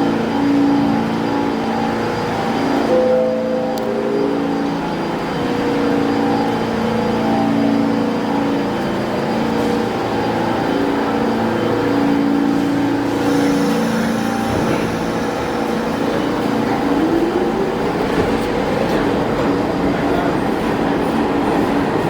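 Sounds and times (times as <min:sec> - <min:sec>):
wheels rumbling on rail: 0:03.8 - 0:22.0
train motor hum: 0:09.7 - 0:22.0.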